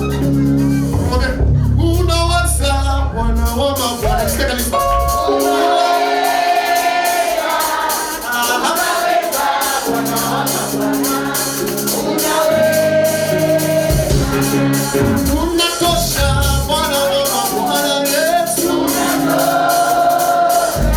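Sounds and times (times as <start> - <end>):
band with percussion: 0.0 - 2.6, 3.3 - 20.9
choir singing: 4.9 - 20.9.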